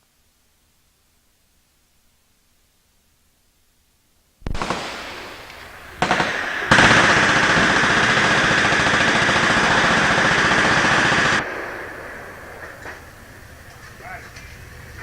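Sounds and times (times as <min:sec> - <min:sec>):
machine gun fire: 0:04.4 - 0:13.8.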